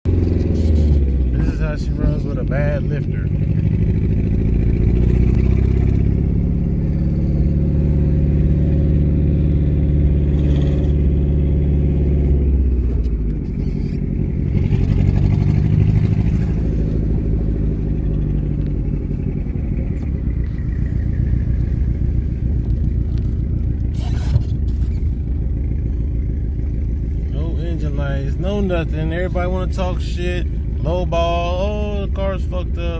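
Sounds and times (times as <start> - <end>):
car engine revving: 0.1 - 32.9.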